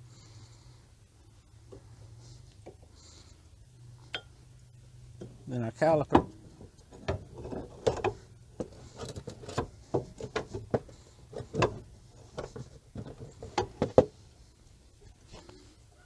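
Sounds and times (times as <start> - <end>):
brake caliper knocks and clicks: 5.2 - 14.2.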